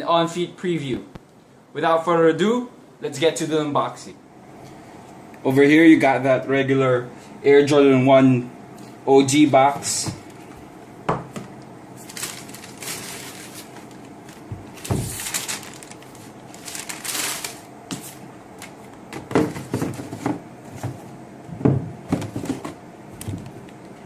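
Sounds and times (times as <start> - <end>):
rustling of wrapping: 12.0 - 18.9.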